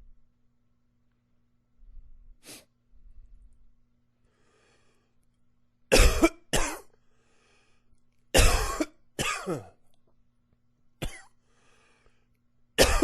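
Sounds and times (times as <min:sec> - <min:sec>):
man coughing: 0:05.9 - 0:06.9, 0:08.4 - 0:09.8, 0:11.0 - 0:11.3, 0:12.8 - 0:13.0.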